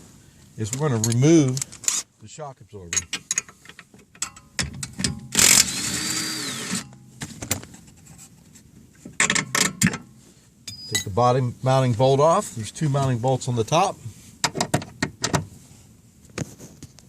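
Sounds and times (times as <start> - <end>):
impact wrench running: 5.3 - 6.9
metal tools clinking: 10.7 - 11.2.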